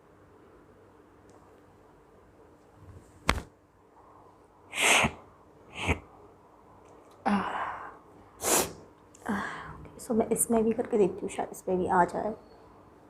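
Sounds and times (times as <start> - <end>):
woman sneezing: 4.8 - 5.2.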